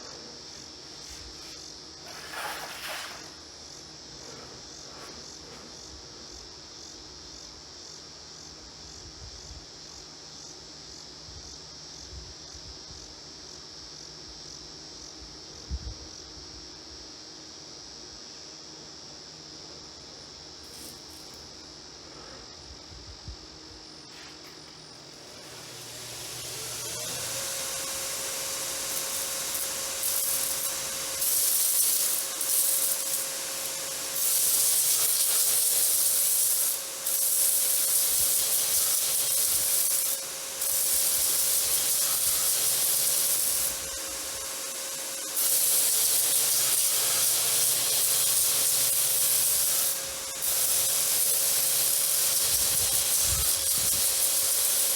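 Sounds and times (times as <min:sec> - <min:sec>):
grinding wheel hissing against steel: 0:00.0 - 0:05.9, 0:20.6 - 0:22.5, 0:24.0 - 0:54.9
grinder motor whine and hum: 0:24.1 - 0:54.9.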